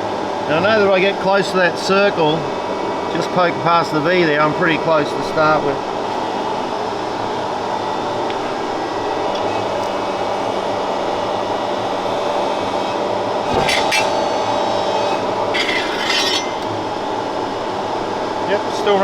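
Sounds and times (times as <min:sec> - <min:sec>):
workshop machine humming: 0:00.0 - 0:19.0
harsh metal scraping: 0:13.4 - 0:17.0.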